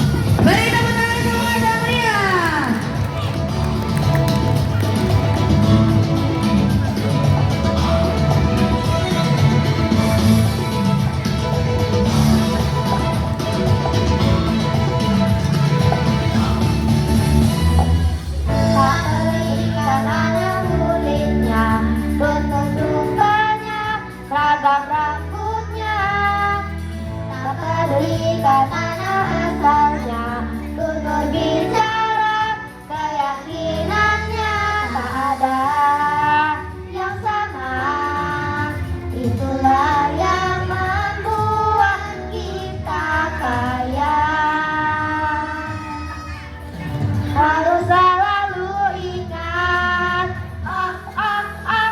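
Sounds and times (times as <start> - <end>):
instrumental accompaniment: 0.0 - 20.9
musical accompaniment: 0.0 - 51.9
children's choir singing: 27.4 - 51.9.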